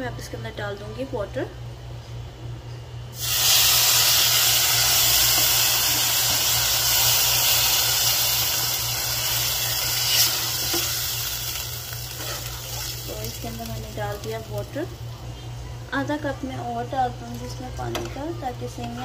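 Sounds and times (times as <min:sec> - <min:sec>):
water sizzling in hot pan: 0:03.2 - 0:14.8.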